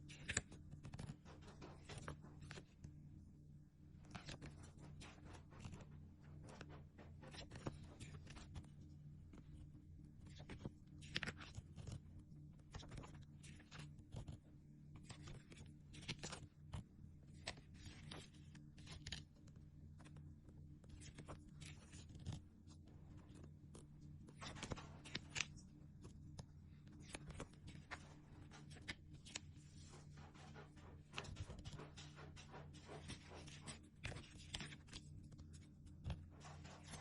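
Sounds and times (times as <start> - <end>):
sticker sheets and packaging crinkling: 0.1 - 2.7, 24.3 - 25.6, 27.0 - 37.0.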